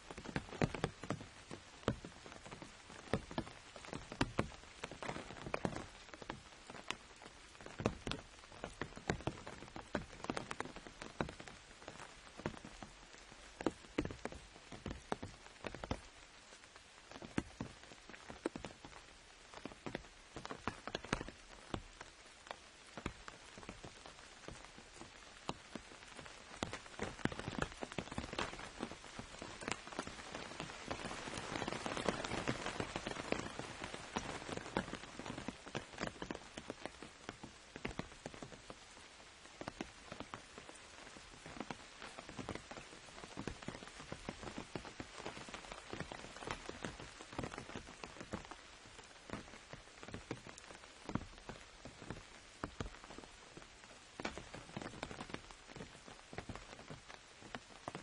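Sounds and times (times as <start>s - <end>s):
rain on an umbrella: 0.0s - 58.0s.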